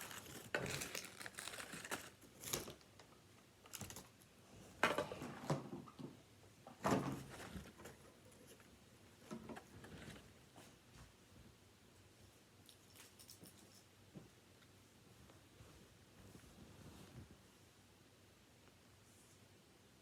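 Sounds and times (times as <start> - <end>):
packaging rustling: 0.0 - 2.8.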